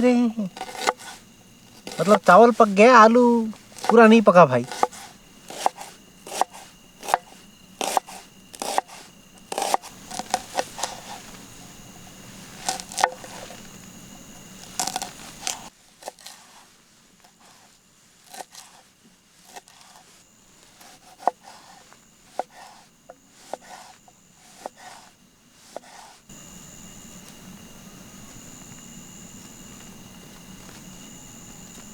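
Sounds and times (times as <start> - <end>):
knife chopping on cutting board: 0.6 - 1.2, 1.9 - 2.5, 3.8 - 11.2, 20.8 - 22.8.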